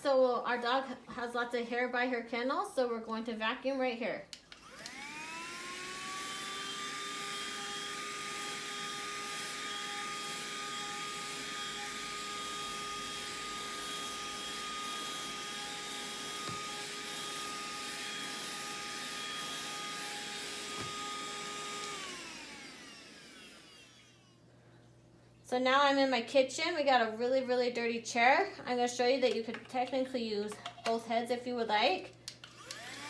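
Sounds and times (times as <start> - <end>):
handheld vacuum cleaner running: 4.5 - 24.4, 32.4 - 33.0.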